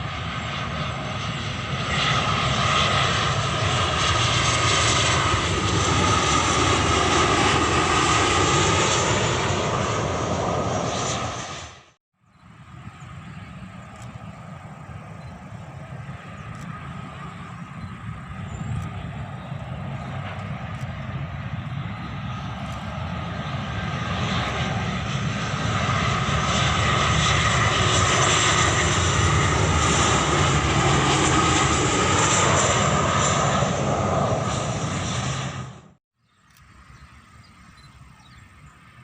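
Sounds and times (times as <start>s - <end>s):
jet engine roar with fan whine: 0.0s - 39.0s.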